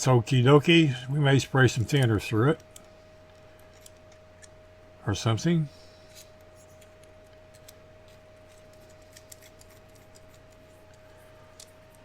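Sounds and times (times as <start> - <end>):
faint steady hum: 0.0 - 12.0
small parts clicking: 1.9 - 4.6, 6.1 - 12.0.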